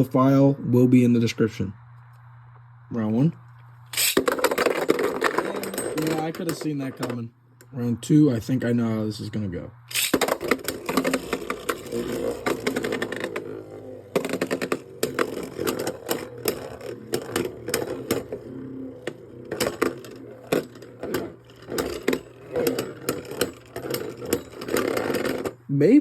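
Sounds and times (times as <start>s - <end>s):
spinning tops whirring: 3.8s - 7.7s, 9.9s - 25.6s
spinning top launch: 3.9s - 7.2s, 9.9s - 25.6s
spinning tops clacking together: 3.9s - 7.3s, 9.9s - 25.6s.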